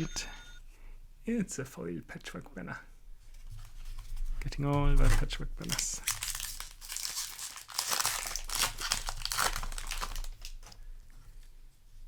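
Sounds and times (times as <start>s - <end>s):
foil wrapper crinkling: 4.9s - 10.8s.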